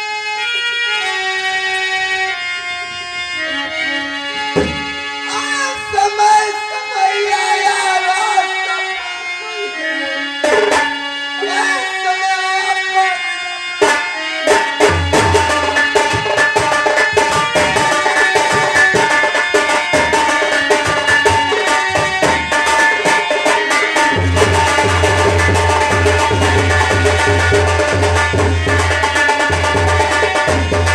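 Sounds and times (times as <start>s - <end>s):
held melodic tones: 0.4s - 30.9s
tabla and drum beat: 4.4s - 8.5s, 10.4s - 12.0s, 13.8s - 30.9s.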